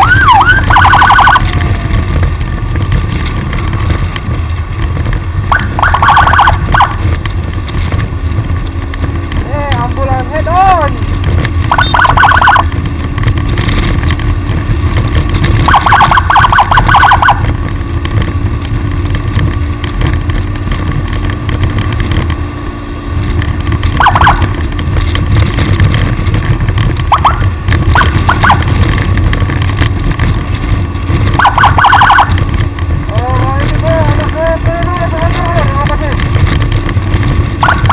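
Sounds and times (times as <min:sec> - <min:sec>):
warbling signal blasts: 0:00.0 - 0:01.4, 0:05.5 - 0:07.0, 0:11.7 - 0:12.7, 0:15.7 - 0:17.4, 0:24.0 - 0:24.6, 0:27.1 - 0:28.7, 0:31.4 - 0:32.3, 0:37.6 - 0:37.9
vehicle engine and road rumble: 0:00.0 - 0:37.9.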